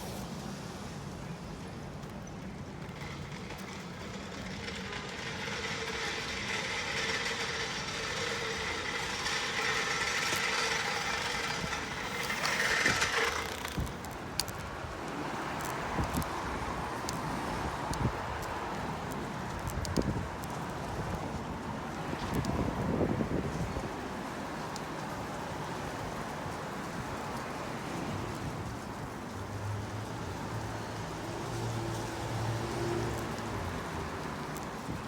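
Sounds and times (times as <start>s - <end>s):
road vehicle passing: 2.5s - 19.7s, 25.7s - 35.0s
wind noise: 4.5s - 29.5s.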